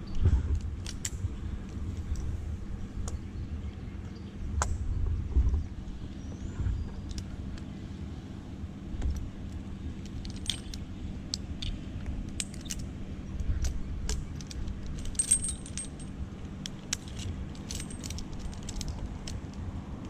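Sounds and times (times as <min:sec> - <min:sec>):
steady low hum: 0:00.0 - 0:20.0
metal climbing hardware clinking: 0:10.0 - 0:12.9, 0:13.5 - 0:20.0.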